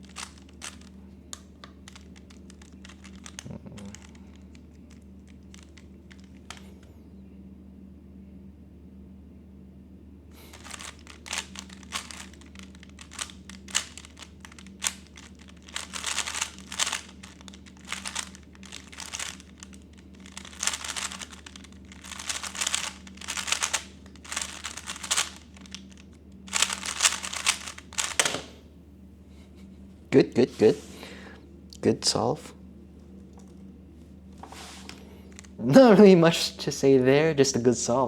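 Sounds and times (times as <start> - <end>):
puzzle cube layers clacking: 0.0 - 0.9, 1.9 - 4.2, 10.5 - 28.6.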